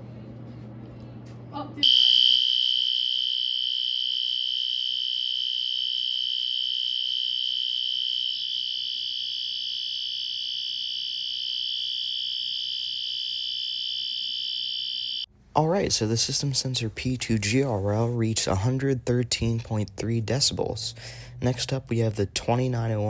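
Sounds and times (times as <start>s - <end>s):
fire alarm horn tone: 1.8s - 15.3s.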